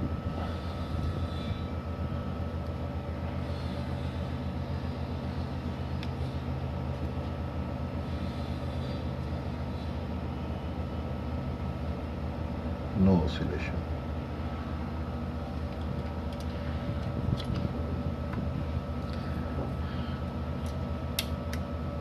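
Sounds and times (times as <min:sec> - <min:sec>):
low machine hum: 0:00.0 - 0:22.0.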